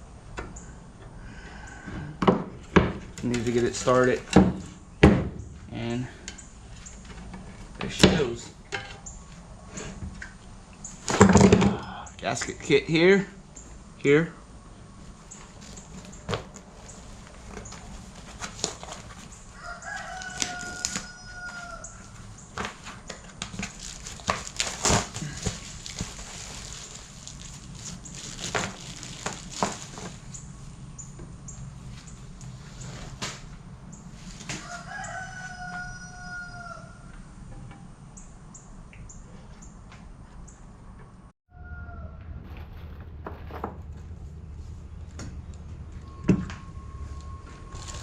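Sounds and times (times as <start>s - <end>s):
rooster crowing: 19.5s - 22.3s, 34.5s - 37.3s, 41.5s - 42.4s
low steady hum: 36.8s - 48.0s.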